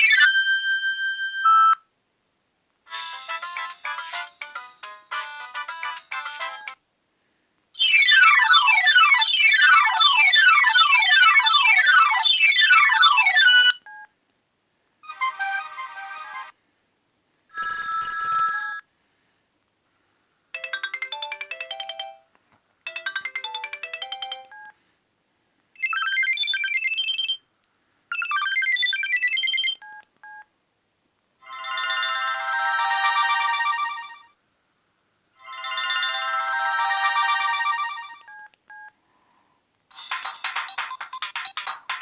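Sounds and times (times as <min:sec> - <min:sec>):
phone ringtone melodies: 0:02.9 - 0:06.8, 0:07.8 - 0:13.8, 0:17.5 - 0:18.8, 0:20.6 - 0:22.3, 0:22.9 - 0:24.7, 0:25.8 - 0:27.4, 0:28.1 - 0:29.9, 0:31.4 - 0:34.4, 0:35.4 - 0:38.9.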